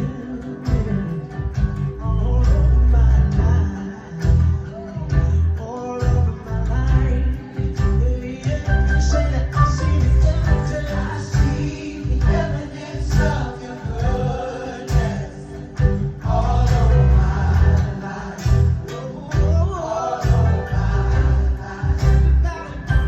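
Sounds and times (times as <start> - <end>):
band with bass and drums: 0.0 - 23.0
lead singer: 0.0 - 23.0
choir singing: 10.6 - 23.0.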